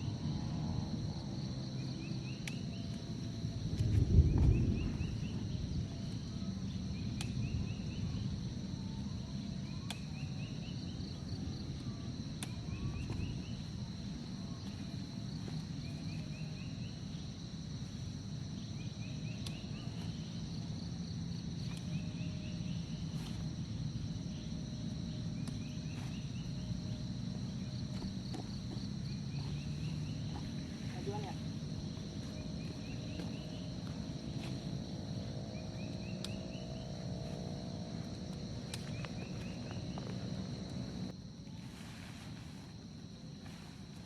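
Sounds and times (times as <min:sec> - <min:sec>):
night insects droning: 0:00.0 - 0:44.0
low rumble: 0:03.6 - 0:06.4.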